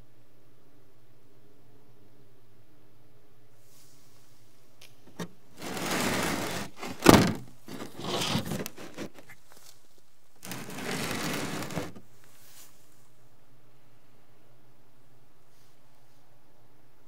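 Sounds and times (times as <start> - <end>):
rubbing or scraping noise: 5.1 - 9.8, 10.4 - 12.8.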